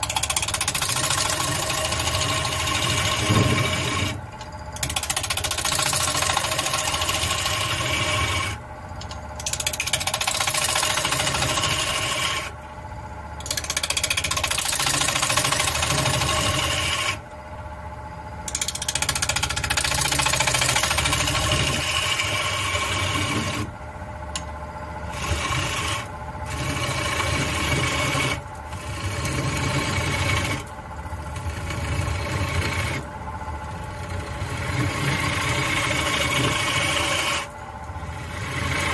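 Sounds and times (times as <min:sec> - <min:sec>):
gouge scraping wood on lathe: 0:00.0 - 0:04.2, 0:04.8 - 0:08.6, 0:09.7 - 0:12.5, 0:13.5 - 0:17.2, 0:18.9 - 0:23.7, 0:25.1 - 0:30.7, 0:31.3 - 0:33.0, 0:34.1 - 0:37.5, 0:38.1 - 0:38.9
lathe humming: 0:00.0 - 0:38.9.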